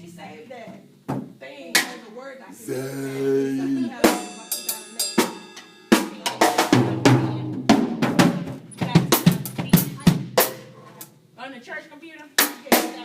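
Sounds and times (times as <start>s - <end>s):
drum kit played with sticks: 3.2s - 11.1s, 12.4s - 13.0s.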